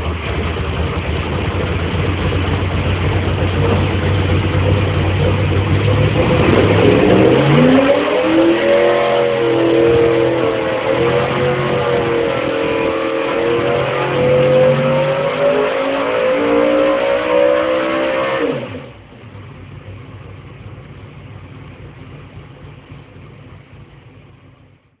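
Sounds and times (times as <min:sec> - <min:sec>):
car engine revving high: 0:00.0 - 0:19.2
engine quiet hum: 0:00.0 - 0:25.0.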